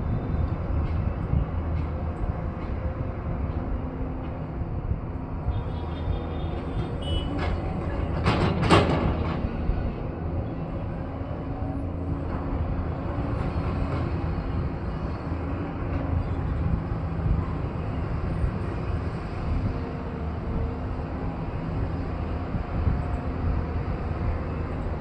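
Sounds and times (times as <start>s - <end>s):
earthmoving machine diesel engine: 0.0s - 25.0s.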